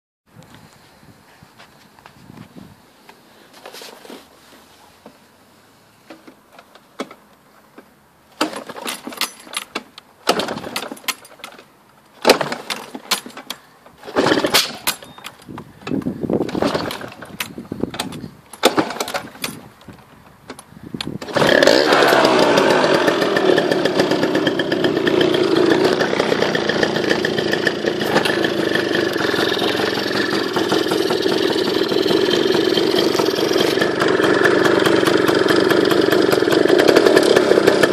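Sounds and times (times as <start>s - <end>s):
scooter engine starting bursts: 14.0s - 14.9s, 16.4s - 17.4s, 21.2s - 37.9s
scooter engine running rattly: 21.2s - 37.9s.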